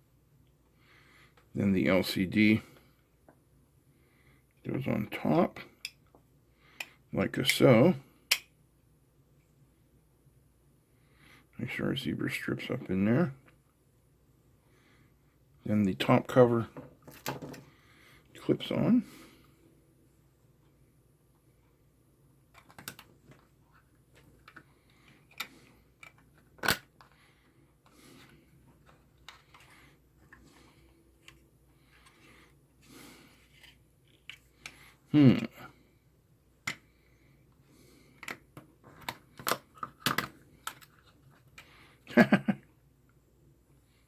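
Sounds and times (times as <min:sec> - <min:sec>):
plastic parts clicking: 0:22.5 - 0:23.5, 0:24.1 - 0:27.2, 0:38.2 - 0:41.7.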